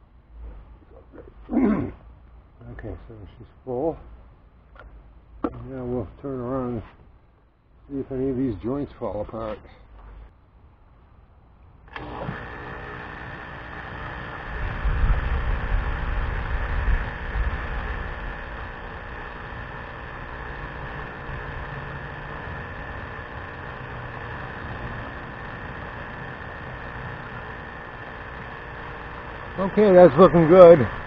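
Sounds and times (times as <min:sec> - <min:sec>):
pool filter pump humming: 0:09.3 - 0:31.0.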